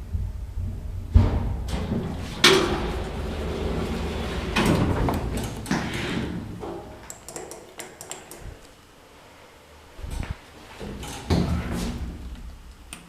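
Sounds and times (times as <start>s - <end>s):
lift sliding doors running: 0.3s - 7.1s, 10.0s - 12.7s
clunks: 1.1s - 7.1s.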